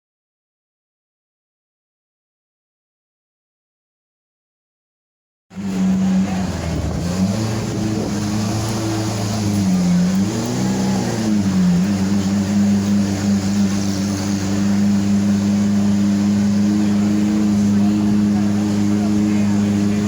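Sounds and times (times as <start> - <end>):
engine humming: 5.5 - 20.0.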